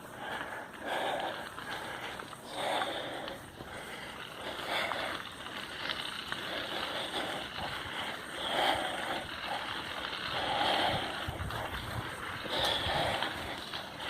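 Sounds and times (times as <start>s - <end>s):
mountain bike on dirt trail: 0.0s - 14.0s
wind on microphone: 10.4s - 13.7s.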